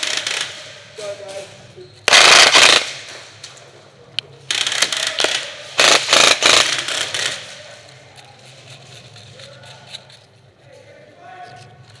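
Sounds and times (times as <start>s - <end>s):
airsoft gun rattling bursts: 0.0s - 0.8s, 2.1s - 3.1s, 4.5s - 10.3s.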